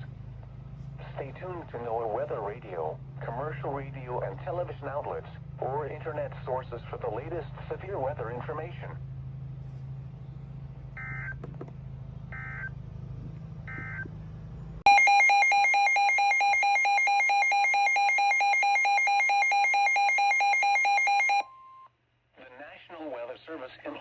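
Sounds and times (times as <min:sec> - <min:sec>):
low radio hum: 0:00.0 - 0:21.4
steady alert alarm tone: 0:14.9 - 0:21.5.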